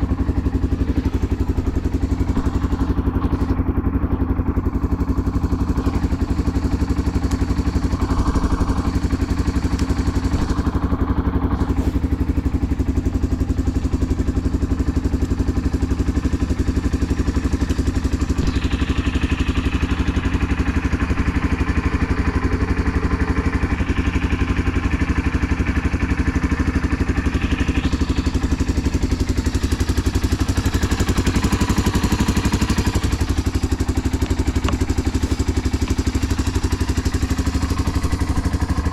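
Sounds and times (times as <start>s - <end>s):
motorcycle engine idling: 0.0s - 38.9s.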